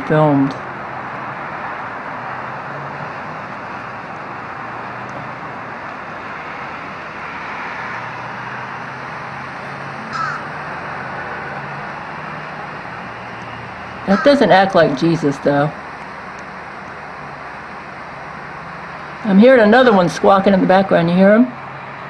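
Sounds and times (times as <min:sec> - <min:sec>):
steady background rush: 0:00.0 - 0:22.0
blackbird squawk: 0:10.1 - 0:10.5.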